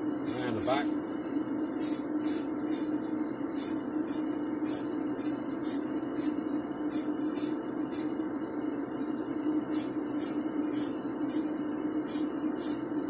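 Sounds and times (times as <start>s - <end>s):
extractor fan hum: 0.0s - 13.0s
spray paint hissing: 1.8s - 2.9s, 3.6s - 8.1s, 9.7s - 12.8s.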